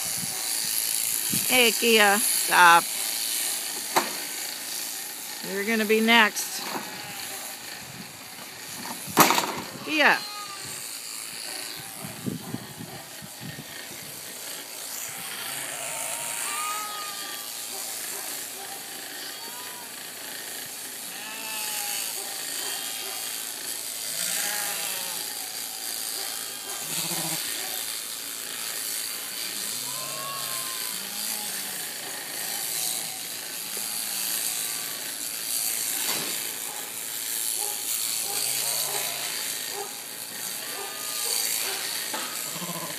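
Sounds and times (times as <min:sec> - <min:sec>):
electric clippers buzzing: 0:00.0 - 0:42.9
sheep bleating: 0:06.8 - 0:07.5, 0:09.7 - 0:10.9, 0:15.1 - 0:17.6, 0:19.0 - 0:20.1, 0:21.0 - 0:23.1, 0:24.0 - 0:25.5, 0:26.8 - 0:27.5, 0:29.6 - 0:34.9, 0:40.4 - 0:41.6, 0:42.2 - 0:42.9.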